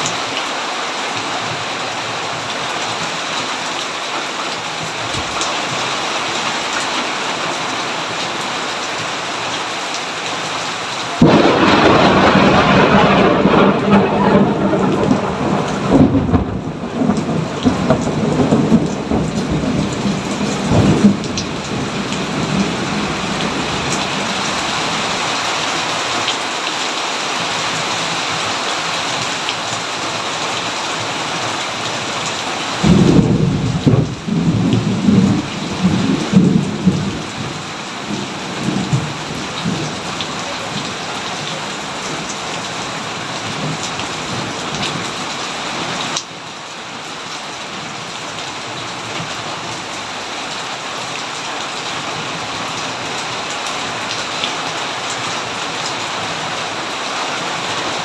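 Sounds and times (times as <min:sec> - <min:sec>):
steady rain: 0:00.0 - 0:58.0
thunder rumbling: 0:11.2 - 0:25.1, 0:32.8 - 0:41.0.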